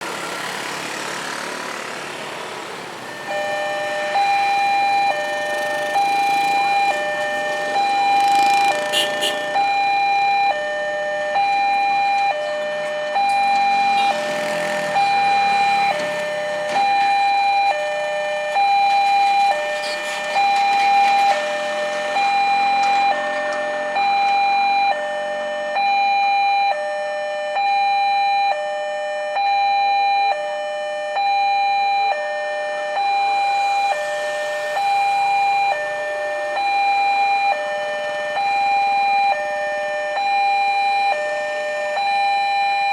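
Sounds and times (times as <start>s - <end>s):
vehicle passing: 0.0s - 9.6s, 12.5s - 18.6s
two-tone level crossing warning signal: 3.1s - 42.9s.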